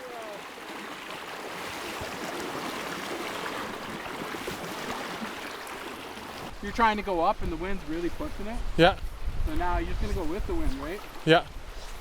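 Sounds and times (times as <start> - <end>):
wind: 0.0 - 12.0.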